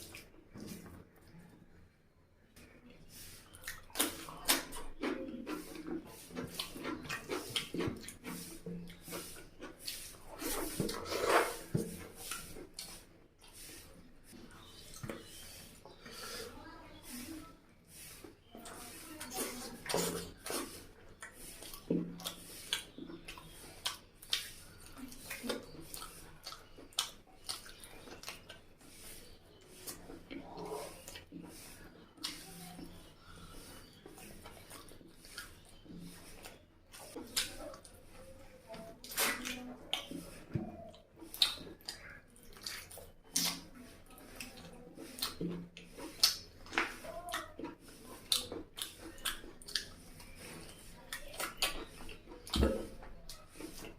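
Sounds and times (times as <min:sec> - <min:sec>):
person chewing food: 0:02.8 - 0:16.3, 0:18.0 - 0:53.9
wet lip smacks and clicks: 0:03.5 - 0:05.2, 0:21.2 - 0:28.6, 0:40.9 - 0:43.6, 0:45.2 - 0:50.4, 0:51.1 - 0:53.4.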